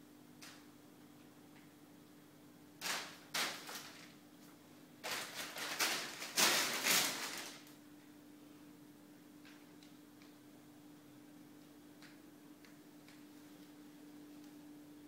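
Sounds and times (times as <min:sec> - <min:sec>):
plastic bag crinkling: 0:02.8 - 0:04.2, 0:05.0 - 0:07.8.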